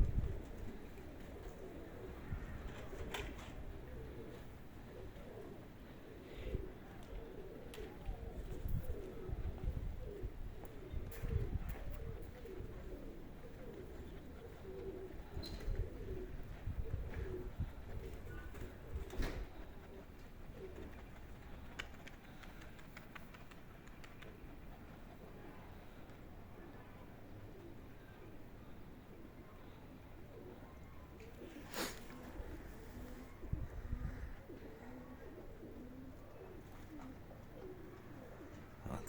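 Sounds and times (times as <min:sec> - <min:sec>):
wind buffeting microphone: 0:00.0 - 0:00.7, 0:08.4 - 0:12.8, 0:15.2 - 0:19.6, 0:32.2 - 0:34.5
pigeons cooing: 0:00.0 - 0:39.0.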